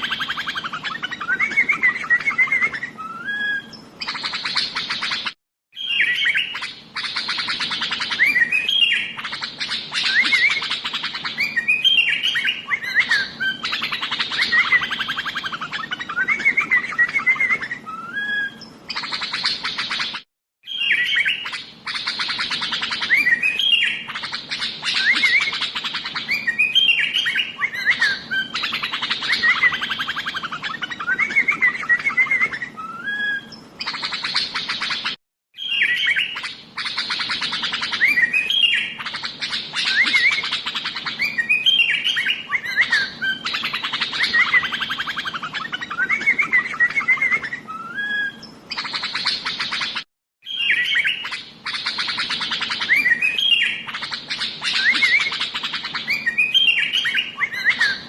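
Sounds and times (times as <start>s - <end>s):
bulbul singing: 0.0s - 58.0s.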